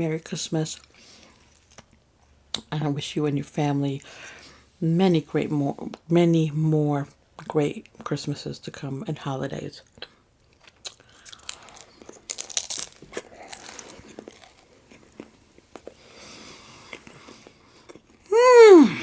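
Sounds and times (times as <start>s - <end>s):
crunchy food chewing: 10.6s - 18.2s.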